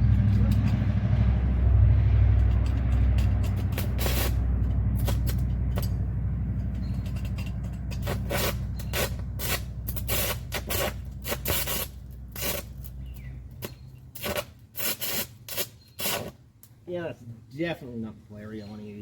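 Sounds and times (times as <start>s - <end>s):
low welder hum: 0.0s - 16.9s
welding arc sputtering and crackling: 2.3s - 16.8s.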